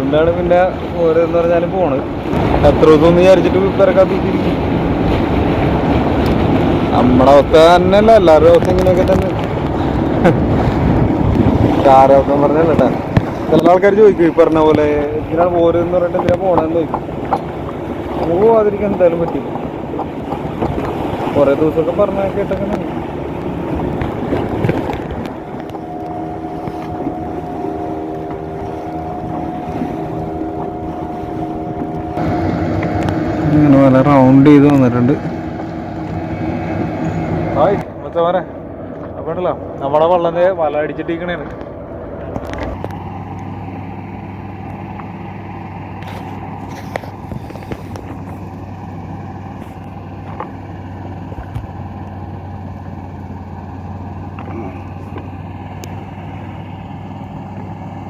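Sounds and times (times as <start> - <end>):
boat engine humming: 0.0 - 58.0
outboard motor running: 0.0 - 58.0
wind on microphone: 2.0 - 21.6, 22.2 - 37.6, 46.0 - 48.4.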